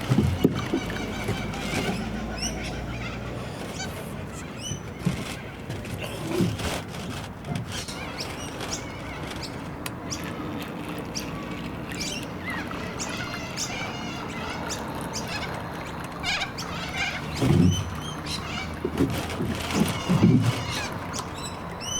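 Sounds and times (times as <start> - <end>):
small birds chirping: 0.0 - 6.6, 7.6 - 10.4, 11.1 - 21.9
waterfowl honk: 12.4 - 21.9.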